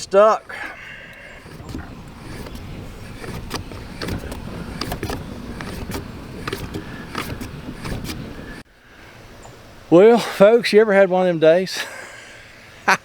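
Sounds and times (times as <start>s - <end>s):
clicks and knocks from seized fan: 0.4s - 8.6s.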